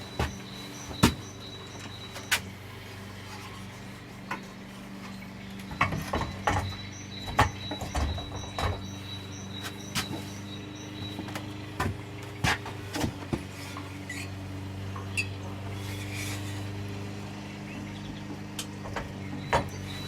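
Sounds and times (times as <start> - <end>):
knocks and clunks of metal parts: 5.7 - 9.0.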